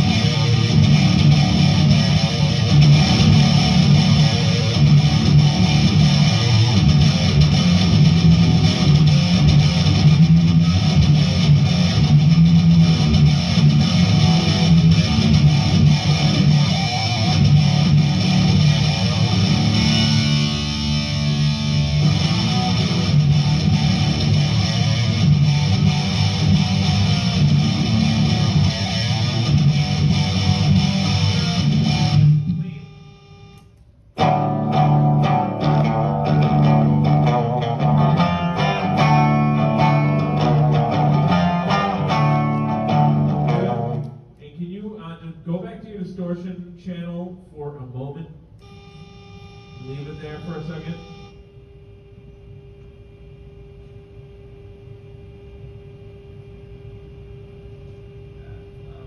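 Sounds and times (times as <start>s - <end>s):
distorted electric guitar riffing: 0.0s - 33.2s, 34.2s - 44.4s.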